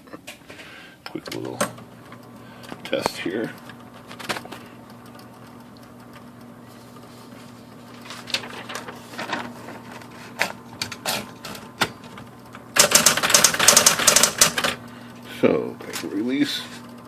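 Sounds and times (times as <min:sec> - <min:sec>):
typewriter motor humming: 0:01.1 - 0:07.1, 0:07.7 - 0:17.0
typewriter mechanism clacking: 0:10.4 - 0:14.8.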